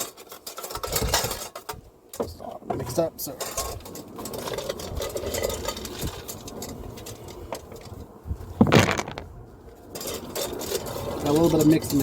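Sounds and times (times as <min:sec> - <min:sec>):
wood pellets rustling: 0:08.6 - 0:09.4.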